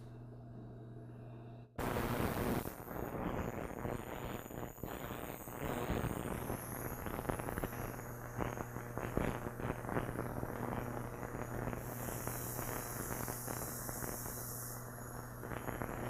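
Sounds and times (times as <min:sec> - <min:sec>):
ultrasonic cleaner low hum: 0:00.0 - 0:16.0
crackling hiss from tank: 0:01.8 - 0:16.0.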